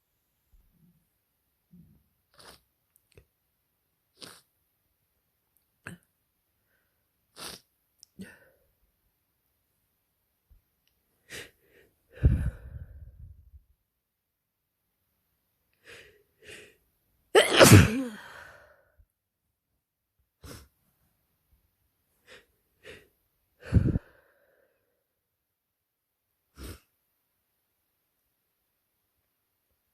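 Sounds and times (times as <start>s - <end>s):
person sneezing: 17.4s - 18.6s.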